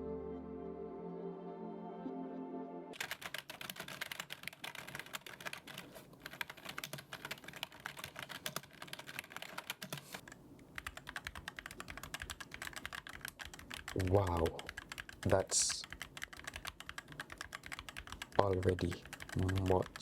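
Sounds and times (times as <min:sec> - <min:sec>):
background music: 0:00.0 - 0:03.0
mechanical keyboard typing: 0:03.0 - 0:20.0.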